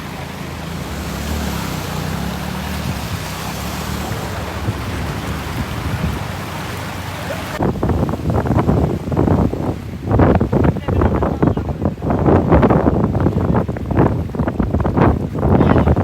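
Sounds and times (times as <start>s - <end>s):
voices: 0.0s - 7.7s, 10.6s - 12.2s, 15.5s - 16.0s
loud rushing noise: 0.0s - 7.8s
low engine hum: 0.0s - 16.0s.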